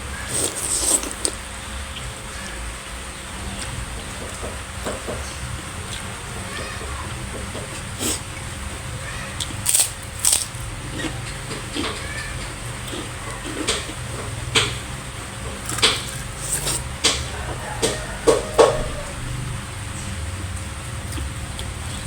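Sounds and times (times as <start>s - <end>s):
chewing clicks and smacks: 15.6s - 17.2s, 21.1s - 21.7s.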